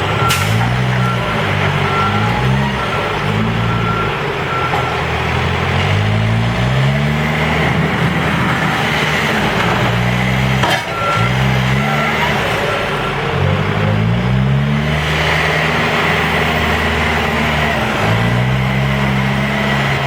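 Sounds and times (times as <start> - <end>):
reversing alarm beeping: 0.0 - 14.2
diesel engine revving: 0.0 - 20.0.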